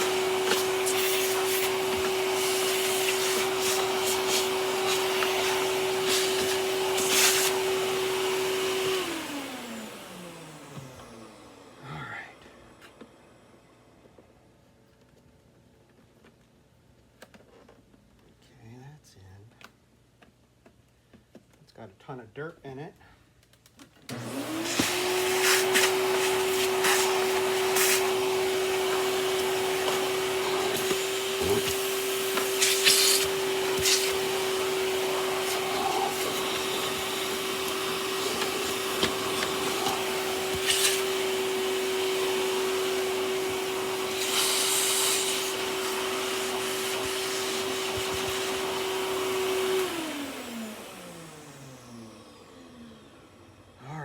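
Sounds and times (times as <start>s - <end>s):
vacuum motor winding down: 0.0s - 11.8s, 24.1s - 53.8s
vacuum cleaner running: 0.0s - 14.5s, 24.1s - 54.0s.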